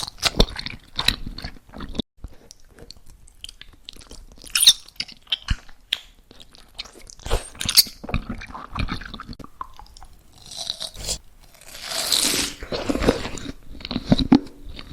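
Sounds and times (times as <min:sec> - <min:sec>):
chewing: 0:00.0 - 0:14.9.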